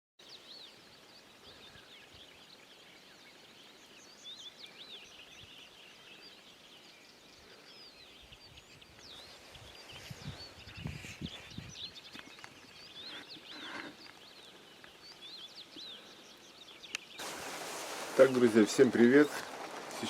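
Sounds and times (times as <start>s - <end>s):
small birds singing and chirping: 0.2s - 20.0s
soft steady hiss: 14.0s - 20.0s.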